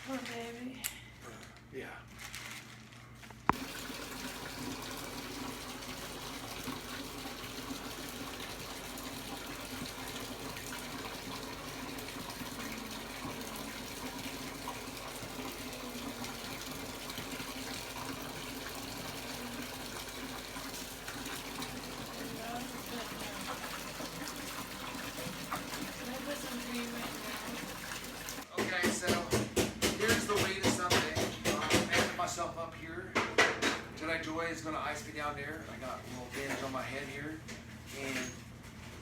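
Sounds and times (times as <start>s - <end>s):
tap water running into sink: 3.5s - 32.2s.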